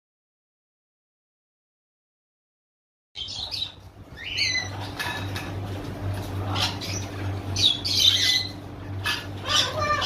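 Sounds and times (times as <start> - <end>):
parrots chirping and whistling: 3.2 - 5.5, 6.4 - 10.0
parrots squawking: 3.2 - 5.5, 6.1 - 10.0
steady low hum: 3.2 - 10.0.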